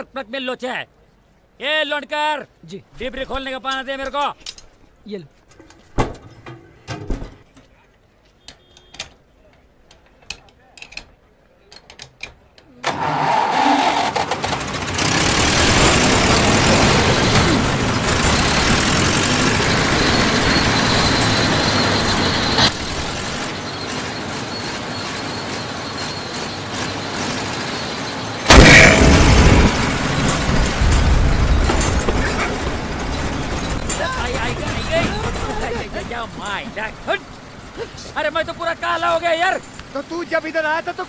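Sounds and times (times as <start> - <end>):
road roller engine running: 13.5 - 40.1
sudden loud blast: 28.5 - 32.6.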